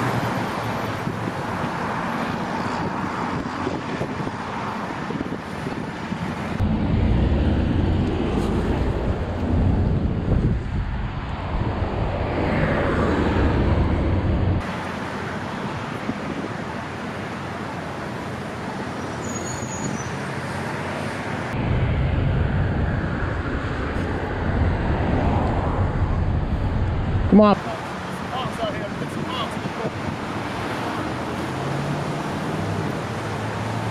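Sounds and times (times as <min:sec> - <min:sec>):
road traffic: 0:00.0 - 0:33.9
heavy low rumble: 0:06.6 - 0:14.6, 0:21.6 - 0:27.6.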